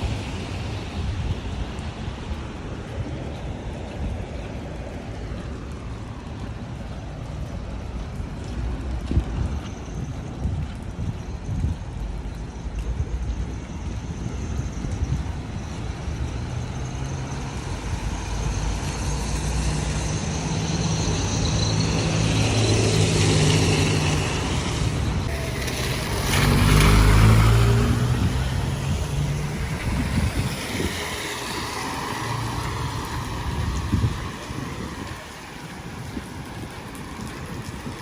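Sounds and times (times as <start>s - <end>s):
tyres hissing on wet road: 0.0s - 9.5s, 15.4s - 38.0s
car engines passing: 11.8s - 38.0s.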